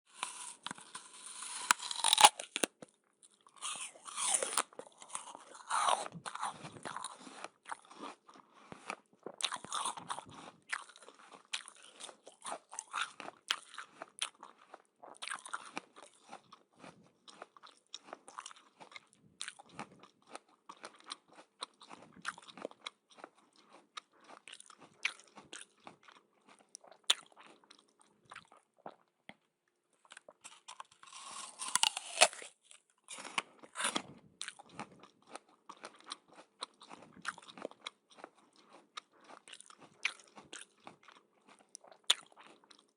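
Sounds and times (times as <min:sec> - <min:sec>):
crisp bites into crunchy food: 0:00.1 - 0:02.9, 0:03.5 - 0:08.2, 0:30.4 - 0:37.8
crackly chewing: 0:00.1 - 0:42.9.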